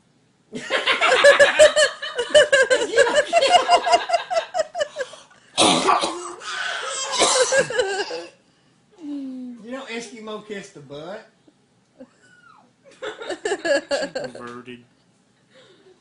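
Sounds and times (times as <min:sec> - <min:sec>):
harsh cough-like burst: 0:05.6 - 0:08.4.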